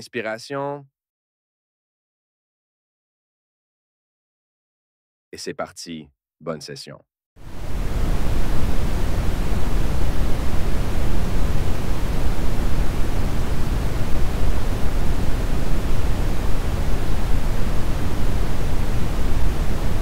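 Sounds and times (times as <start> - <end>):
brown noise rumbling hiss: 7.4 - 20.0.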